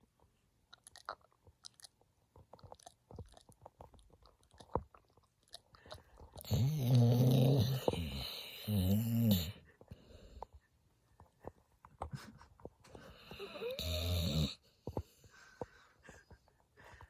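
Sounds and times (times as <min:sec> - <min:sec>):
dog snoring: 0:06.4 - 0:10.3, 0:13.0 - 0:15.0.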